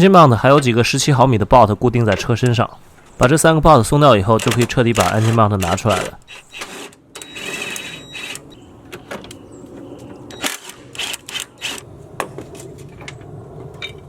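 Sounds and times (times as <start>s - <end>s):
hand tools clicking on metal: 4.2s - 8.5s.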